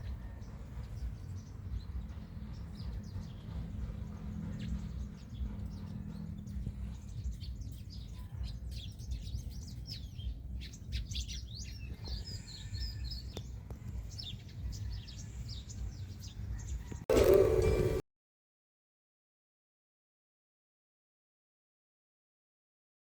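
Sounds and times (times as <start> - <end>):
small birds chirping: 0.0 - 18.0
loud abrupt sound: 17.1 - 18.0.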